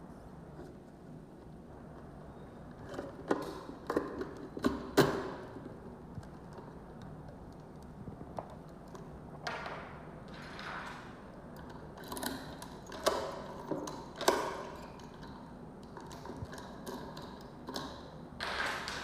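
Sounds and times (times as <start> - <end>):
lock parts clicking and knocking: 8.4 - 19.0.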